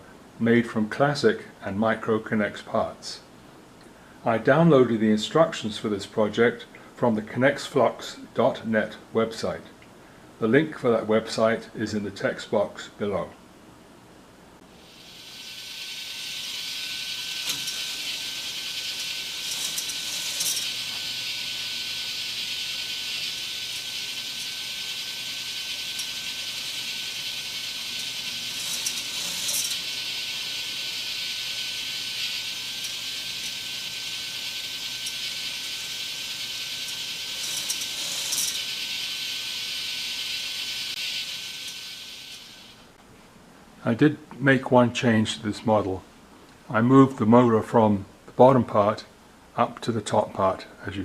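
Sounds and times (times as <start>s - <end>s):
toy roller coaster motor whirring: 14.8s - 42.9s.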